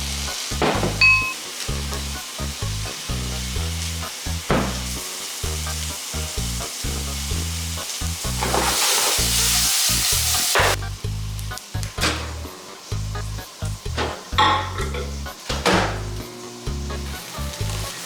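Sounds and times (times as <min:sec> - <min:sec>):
food sizzling in a pan: 0:00.0 - 0:18.0
background music with bass beat: 0:09.2 - 0:18.0.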